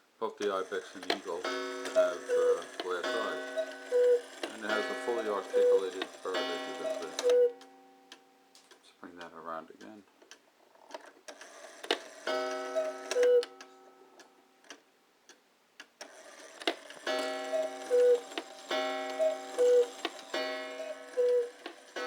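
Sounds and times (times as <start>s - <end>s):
cuckoo clock calling: 0.4s - 8.2s, 11.3s - 14.4s, 16.0s - 22.0s
clock movement clicks: 0.4s - 22.0s.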